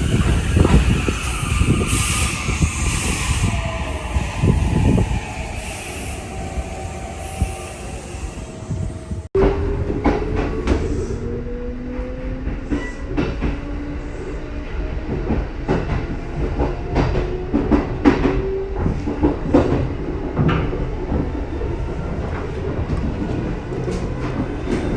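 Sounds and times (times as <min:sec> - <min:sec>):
train rumble: 0:00.0 - 0:24.9
train wheels over rail joints: 0:14.6 - 0:24.9.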